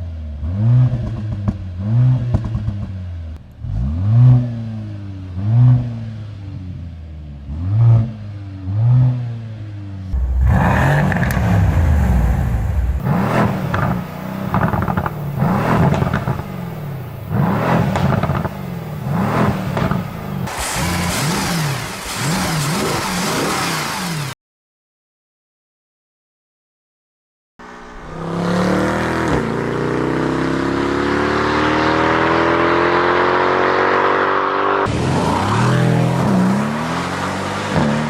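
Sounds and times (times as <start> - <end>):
car engine revving: 10.1 - 24.3, 27.6 - 38.0.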